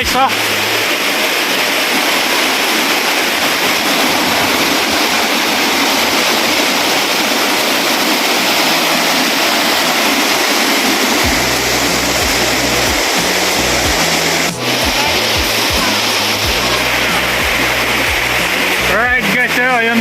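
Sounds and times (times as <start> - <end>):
waterfall rushing: 0.0 - 20.0
low bass music notes: 11.2 - 19.9.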